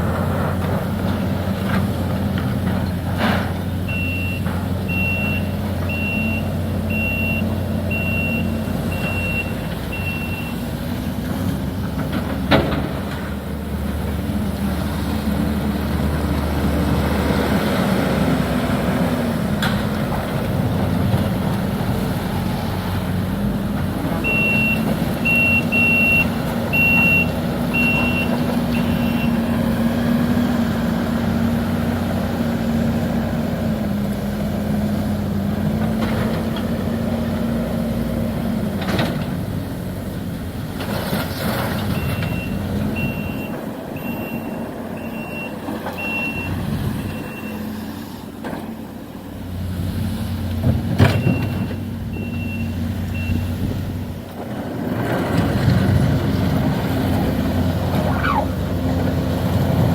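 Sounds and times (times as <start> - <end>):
demolition machinery running: 0.0 - 47.5, 48.2 - 59.9
backup alarm beeping: 3.9 - 10.6, 24.2 - 29.5, 42.0 - 47.6, 51.2 - 53.6.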